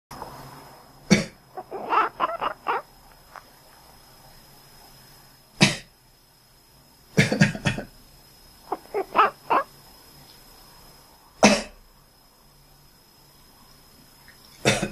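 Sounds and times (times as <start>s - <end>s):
cat making quacking calls: 1.6s - 2.8s, 8.7s - 9.7s
person coughing: 11.4s - 11.8s, 14.7s - 14.9s.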